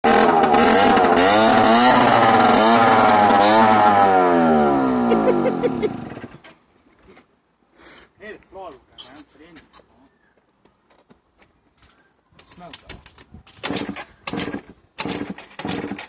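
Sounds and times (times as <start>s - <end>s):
motorcycle engine stalling: 0.0s - 4.5s, 13.6s - 16.0s.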